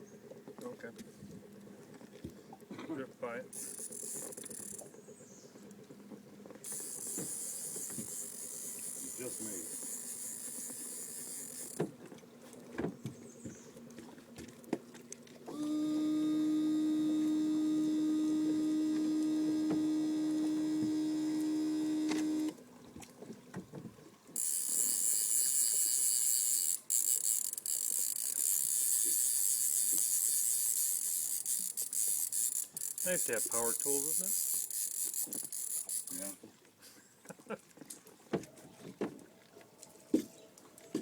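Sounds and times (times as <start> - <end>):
electric motor humming: 15.5 - 22.6
high-pitched motor whine: 15.5 - 22.6.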